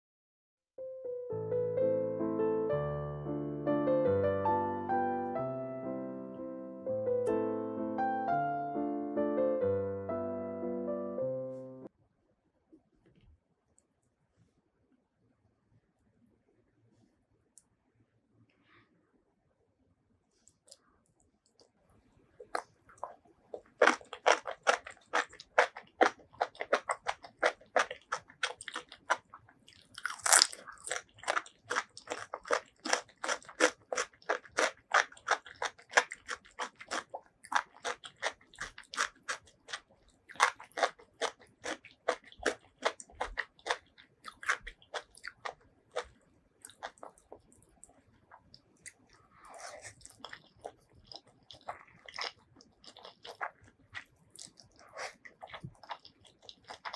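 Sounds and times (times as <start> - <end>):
crunchy chewing and biting: 22.4 - 56.9.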